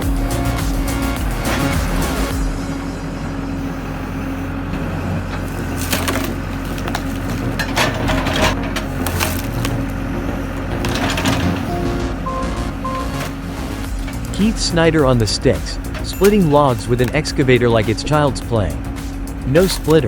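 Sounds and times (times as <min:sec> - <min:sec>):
excavator engine running: 0:00.0 - 0:20.0
wood cracking and splintering: 0:04.9 - 0:11.7.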